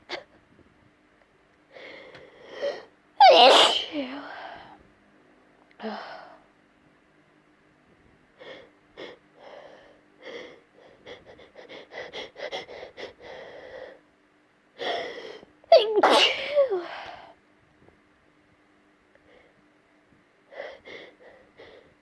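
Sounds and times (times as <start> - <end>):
woman sneezing loudly: 3.2 - 4.0, 15.7 - 16.9.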